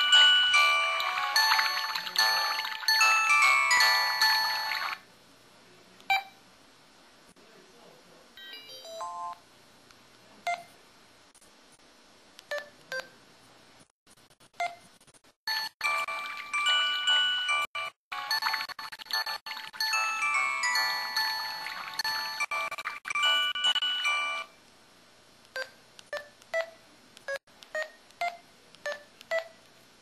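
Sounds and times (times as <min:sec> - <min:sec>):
bright jingle: 0:00.0 - 0:05.0, 0:15.6 - 0:17.9, 0:19.8 - 0:22.5
phone chime melody: 0:00.0 - 0:05.0, 0:15.5 - 0:24.6.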